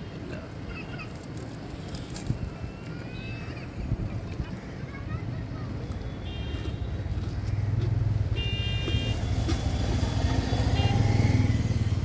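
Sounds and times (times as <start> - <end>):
vehicle engine drone: 8.9 - 12.0.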